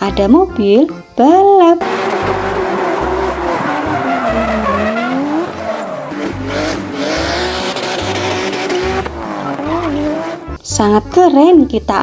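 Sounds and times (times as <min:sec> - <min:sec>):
race car engine revving: 0:01.8 - 0:10.6.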